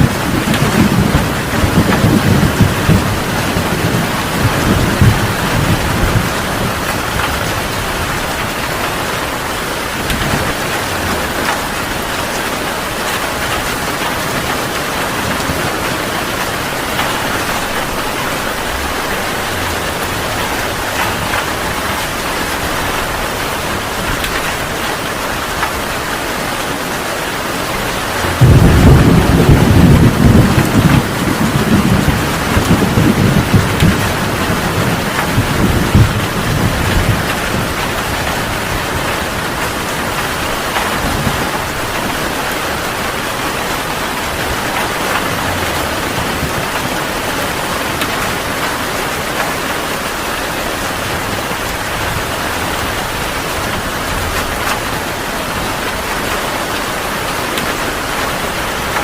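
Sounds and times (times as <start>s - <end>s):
thunderclap: 0.0s - 24.8s, 27.6s - 49.6s
heavy rain pouring: 0.0s - 59.0s
thunder rumbling: 0.0s - 59.0s.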